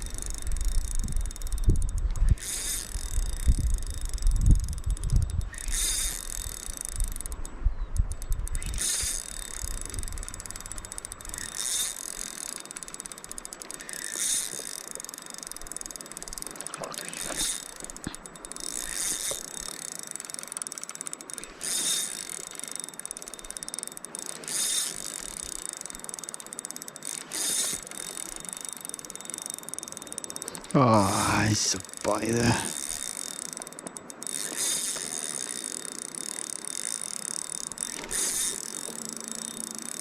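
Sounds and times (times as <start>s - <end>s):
fishing reel ratcheting: 0.0s - 40.0s.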